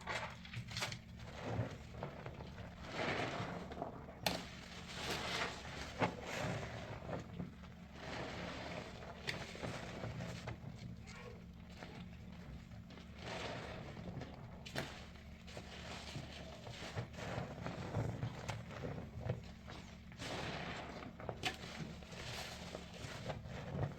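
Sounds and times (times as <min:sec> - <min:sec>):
wet sponge squelching: 0:13.0 - 0:23.9.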